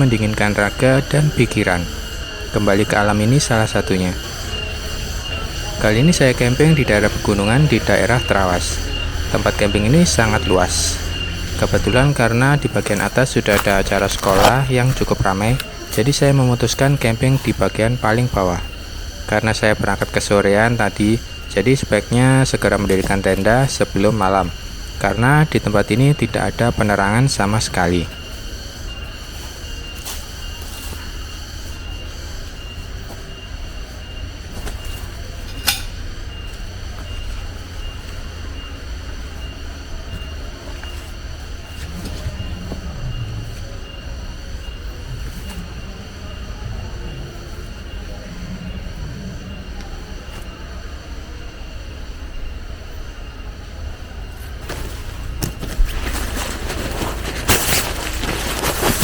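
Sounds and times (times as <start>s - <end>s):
camping gear rustling: 11.4s - 16.0s, 54.3s - 59.0s.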